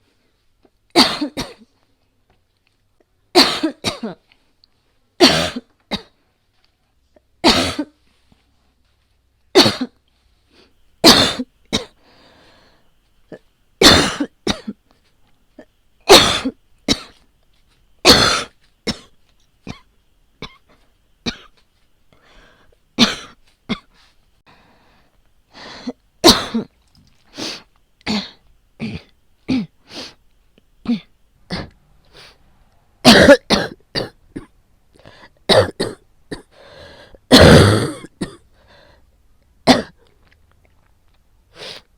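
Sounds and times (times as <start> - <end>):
woman coughing: 1.0 - 1.7, 3.4 - 4.3, 5.2 - 6.2, 7.4 - 8.0, 9.6 - 10.0, 11.0 - 12.0, 13.3 - 14.8, 15.6 - 17.2, 18.0 - 19.1, 21.3 - 21.6, 23.0 - 23.9, 25.8 - 26.7, 28.1 - 29.8, 33.0 - 34.5, 35.5 - 36.6, 37.3 - 38.4, 39.7 - 40.0.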